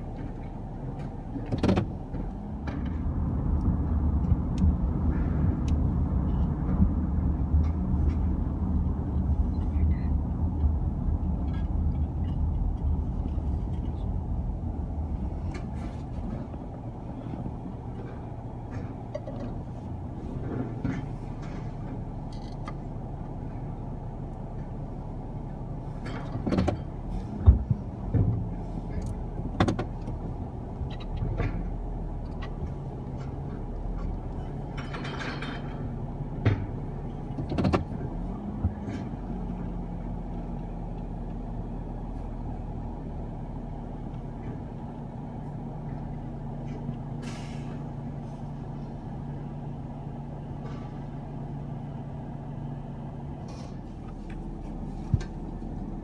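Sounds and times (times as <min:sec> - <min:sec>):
garbage truck engine running: 0:00.0 - 0:56.0
metal clanks and bangs: 0:34.0 - 0:36.8
short air hisses: 0:47.2 - 0:47.8.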